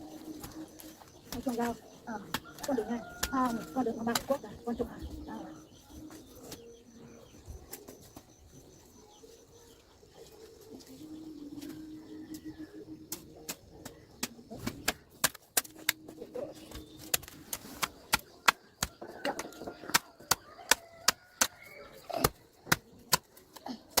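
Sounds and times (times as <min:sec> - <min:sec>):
sharp irregular knocks or chops: 0:13.1 - 0:16.1, 0:17.1 - 0:24.0.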